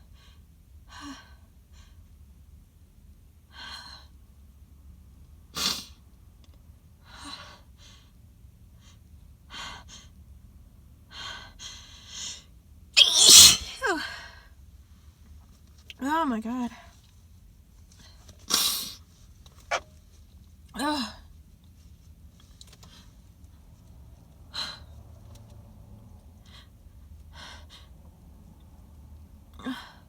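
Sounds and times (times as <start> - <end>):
woman sneezing: 13.0 - 14.0.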